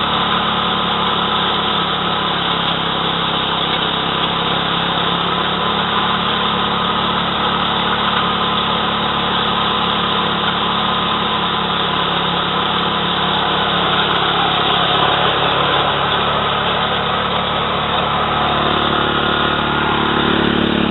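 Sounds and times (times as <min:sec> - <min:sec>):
thresher engine running: 0:00.0 - 0:20.9.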